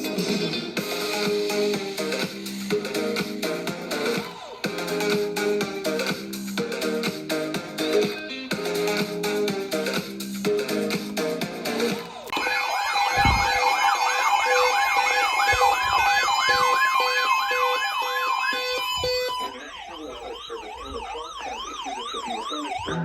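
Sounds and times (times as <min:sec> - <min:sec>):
electronic siren sweeping: 0:12.3 - 0:23.0.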